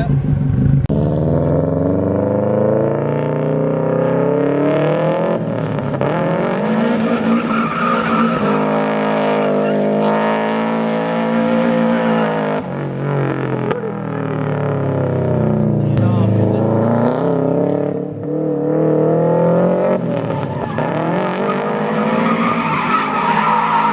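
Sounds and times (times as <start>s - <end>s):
car engine revving: 0.0s - 23.9s
tyres screeching: 6.9s - 12.6s, 20.4s - 23.9s.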